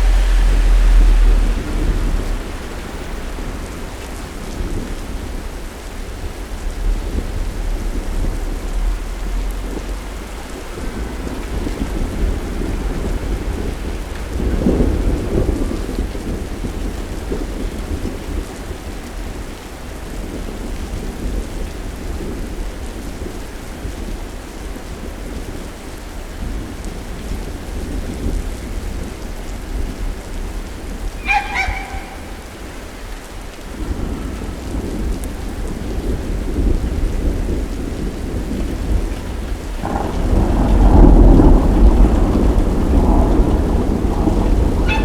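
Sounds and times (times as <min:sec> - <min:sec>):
rolling thunder: 0:00.0 - 0:24.1, 0:26.4 - 0:45.0
rain falling: 0:00.0 - 0:45.0.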